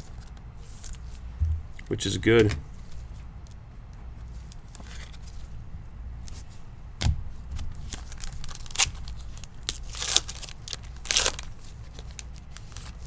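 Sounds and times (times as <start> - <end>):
card pack wrapper tearing: 7.9 - 13.0.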